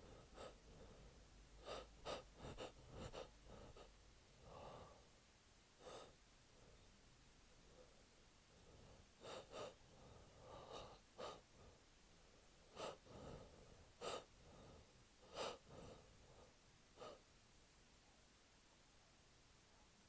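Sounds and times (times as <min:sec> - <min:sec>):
man gasping breaths: 0:00.0 - 0:05.1, 0:12.7 - 0:17.2.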